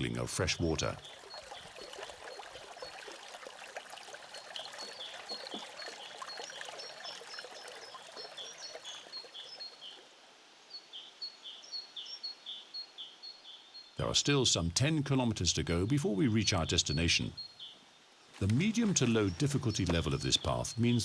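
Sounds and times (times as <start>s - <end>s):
bird chirping: 0.0s - 3.4s, 4.2s - 10.1s, 10.7s - 14.7s, 15.8s - 17.8s, 18.4s - 21.0s
stream gurgling and trickling: 0.0s - 10.7s, 18.3s - 21.0s.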